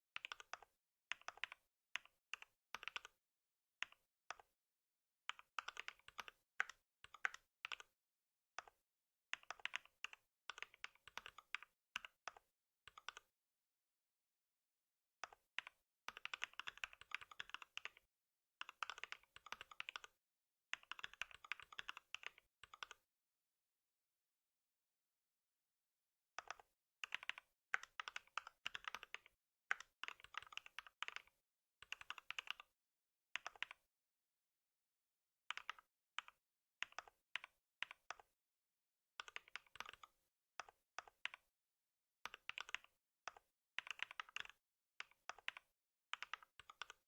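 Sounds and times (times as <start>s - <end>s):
typing on computer keyboard: 0.2s - 3.2s, 5.3s - 7.9s, 9.4s - 13.3s, 15.2s - 18.0s, 18.6s - 20.2s, 20.8s - 23.0s, 26.4s - 32.7s, 33.4s - 33.8s, 39.2s - 41.5s, 42.3s - 47.0s.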